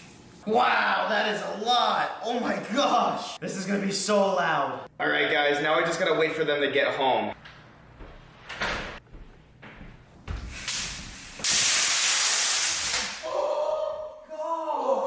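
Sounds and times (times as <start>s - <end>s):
snap pops crackling burst: 10.6s - 13.2s
people yelling: 13.2s - 15.0s.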